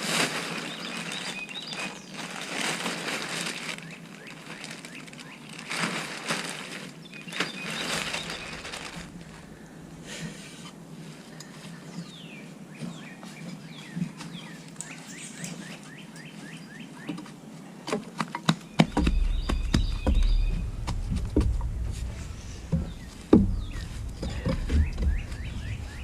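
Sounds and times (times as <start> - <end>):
bird chirping: 7.0 - 9.8, 18.5 - 26.0
low rumble: 8.1 - 10.3, 18.9 - 26.0
sharp knocks: 18.4 - 26.0
rough scraping: 18.8 - 26.0.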